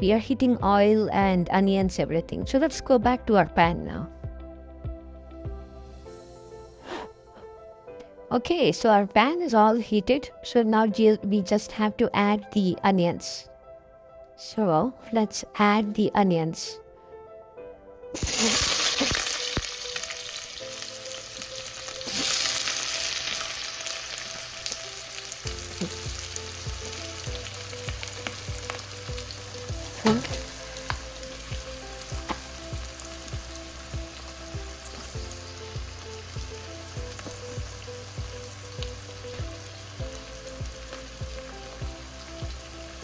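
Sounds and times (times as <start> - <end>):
onions sizzling in hot oil: 18.2 - 43.0.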